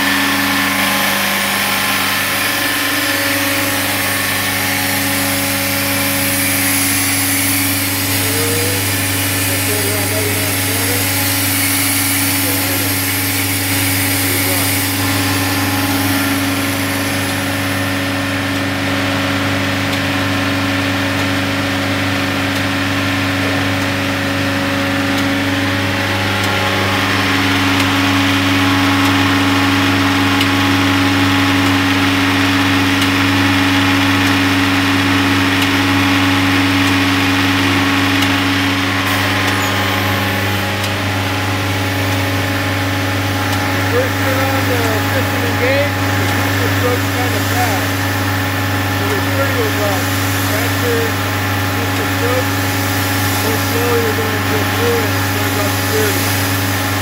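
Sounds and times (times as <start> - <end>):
machine hum with steady tone: 0.0 - 57.0
loud hiss: 0.6 - 17.3, 49.0 - 57.0.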